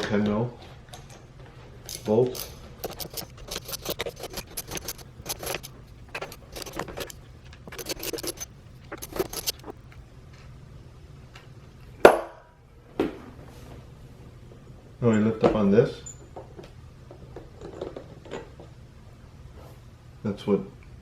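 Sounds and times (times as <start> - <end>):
hand tool clicking on bolts: 2.8 - 9.7.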